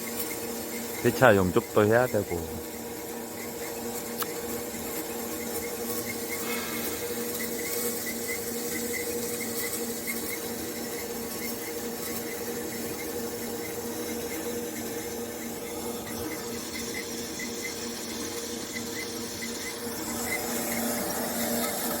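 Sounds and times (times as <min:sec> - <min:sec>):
machine humming: 0:00.6 - 0:09.8, 0:19.0 - 0:22.0.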